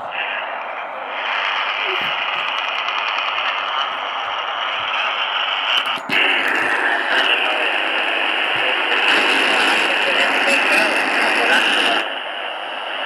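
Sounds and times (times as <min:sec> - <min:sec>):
radio static hiss: 0:00.0 - 0:13.0
clicks: 0:01.2 - 0:07.4.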